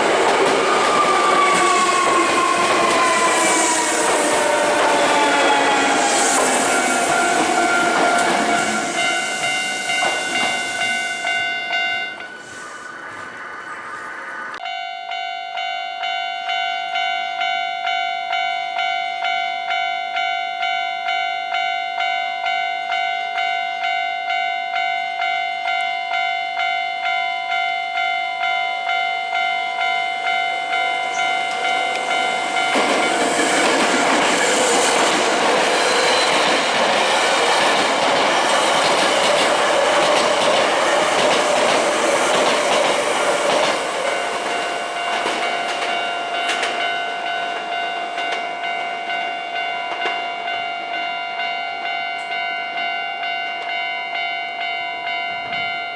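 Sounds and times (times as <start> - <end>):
train wheels clattering on rails: 0.0 - 13.4, 29.4 - 50.7
level-crossing warning bell: 0.0 - 55.9.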